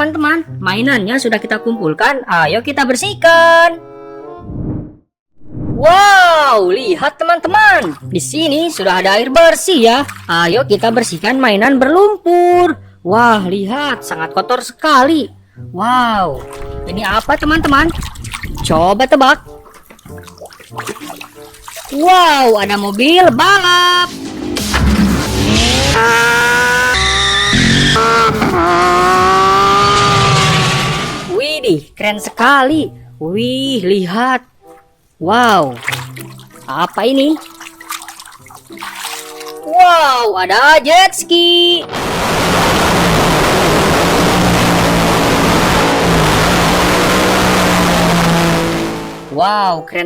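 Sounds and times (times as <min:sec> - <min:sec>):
race car engine revving: 0:23.8 - 0:31.4, 0:41.9 - 0:49.4
jet ski engine running: 0:42.1 - 0:49.4.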